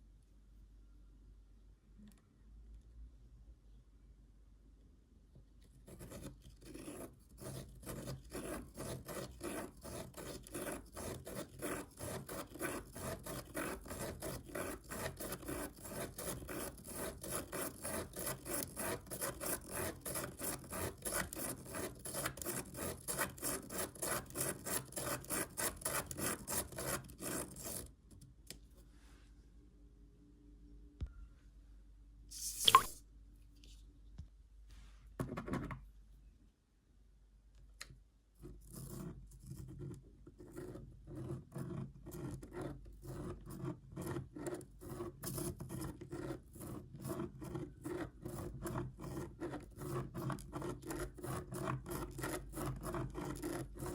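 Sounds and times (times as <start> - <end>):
pen scratching on paper: 5.9 - 27.9, 38.4 - 53.9.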